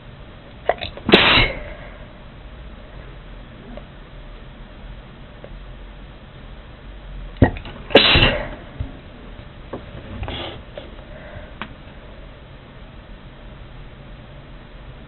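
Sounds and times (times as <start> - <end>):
person sneezing: 1.1 - 2.0, 7.9 - 8.7.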